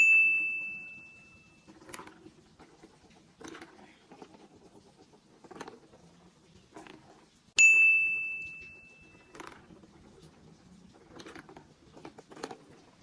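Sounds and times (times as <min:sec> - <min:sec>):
high chime ding: 0:00.0 - 0:01.6, 0:07.6 - 0:09.2.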